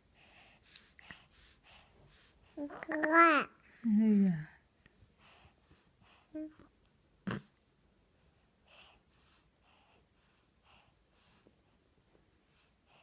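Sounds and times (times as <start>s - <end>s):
baby breathing softly: 0.0s - 2.7s, 5.0s - 6.7s, 8.2s - 13.0s
baby cooing: 2.6s - 3.6s.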